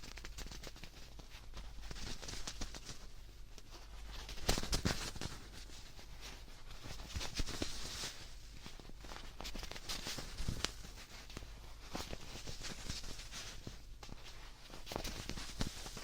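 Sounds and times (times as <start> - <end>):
handling crackles and scratches: 0.0 - 16.0.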